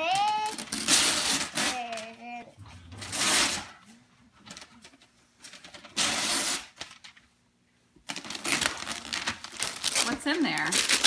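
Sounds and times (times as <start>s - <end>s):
wrapping paper tearing: 0.0s - 2.2s, 3.0s - 3.8s, 5.6s - 7.1s, 8.1s - 11.0s
paper crinkling and rustling: 4.4s - 7.2s, 8.1s - 11.0s.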